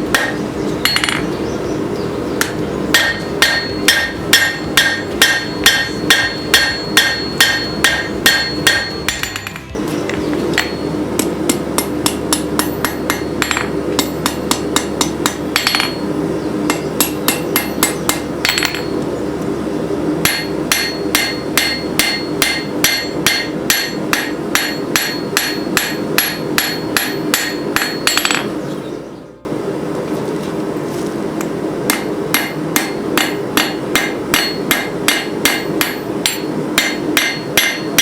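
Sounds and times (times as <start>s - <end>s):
hammer striking steel on anvil: 0.0s - 1.3s, 2.4s - 19.0s, 20.2s - 28.6s, 31.9s - 38.0s
steady hum: 0.0s - 38.0s.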